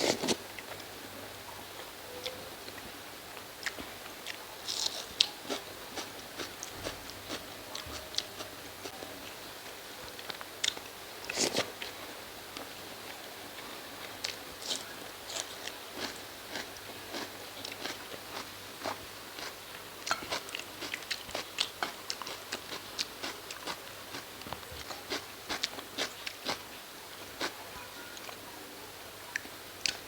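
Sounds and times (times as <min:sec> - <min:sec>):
person chewing food: 0:02.2 - 0:09.0, 0:13.5 - 0:26.7, 0:27.3 - 0:27.6.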